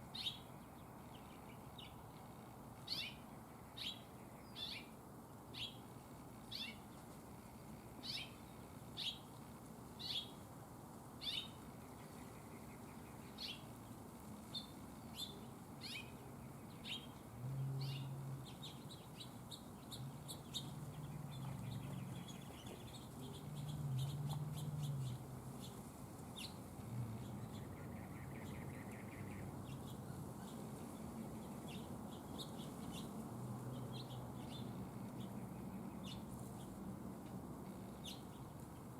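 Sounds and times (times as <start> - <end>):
songbird chip calls: 2.9 - 3.2, 11.2 - 13.7, 17.8 - 25.8.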